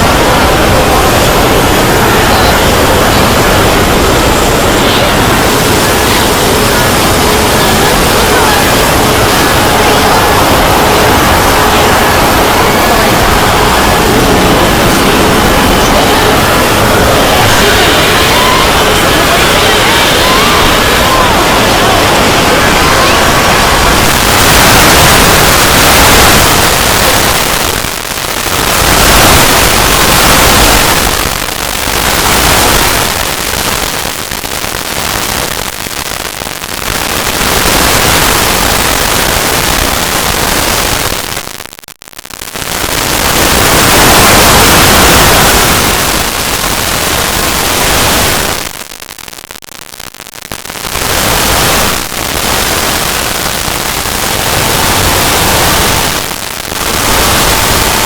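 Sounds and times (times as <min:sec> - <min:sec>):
loud distorted static noise: 0:00.0 - 0:58.0.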